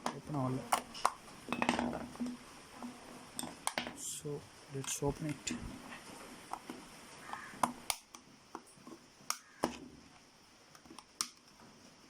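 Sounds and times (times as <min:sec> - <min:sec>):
plastic casing clicking and snapping: 0:06.5 - 0:08.7, 0:09.3 - 0:09.8.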